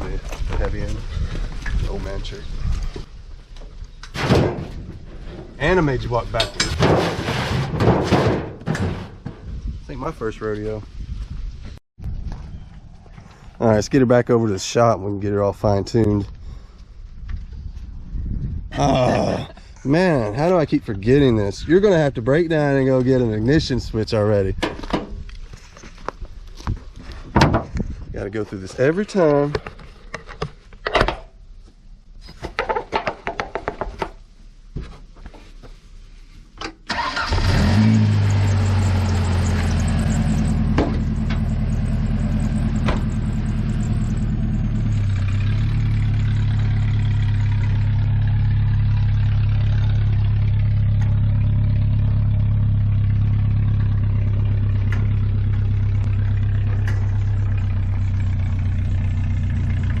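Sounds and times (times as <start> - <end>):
engine cranking: 36.9 - 51.8
engine idling: 38.3 - 60.0.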